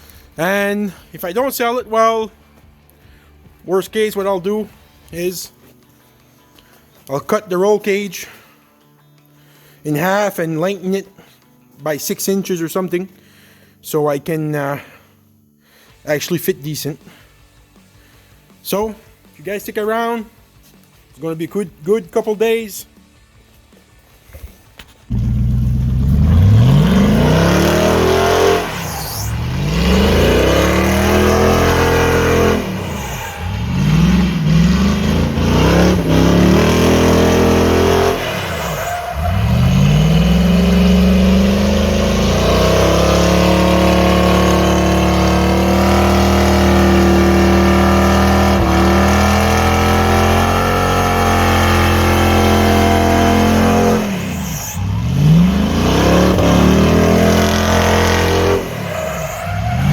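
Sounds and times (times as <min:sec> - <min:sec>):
truck engine revving: 0:25.1 - 0:59.9.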